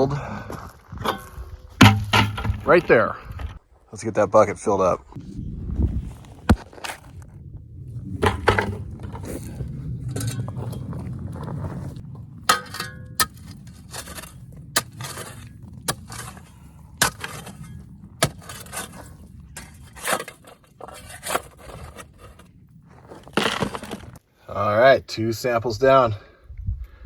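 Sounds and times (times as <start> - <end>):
gravel scraping: 0.0 - 25.0
stones clinking in bucket: 12.5 - 24.2.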